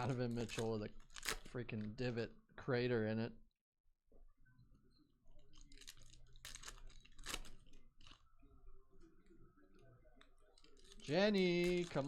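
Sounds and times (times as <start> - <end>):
trading cards rustling and clicking: 0.0 - 2.0, 5.4 - 8.3, 10.2 - 12.0.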